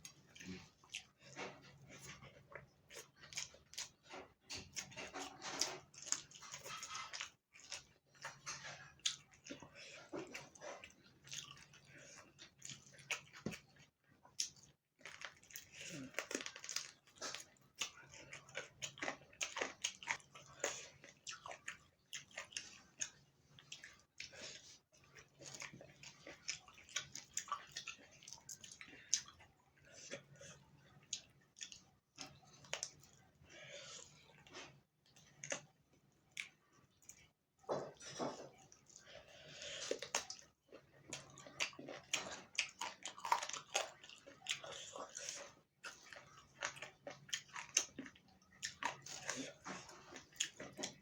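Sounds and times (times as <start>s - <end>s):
chewing and biting: 0.0s - 51.0s
wet chewing smacks: 33.9s - 51.0s.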